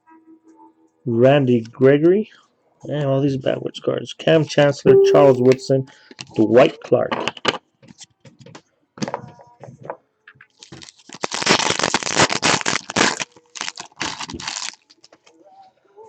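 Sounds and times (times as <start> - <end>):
plastic wrapper crinkling: 11.1 - 14.9.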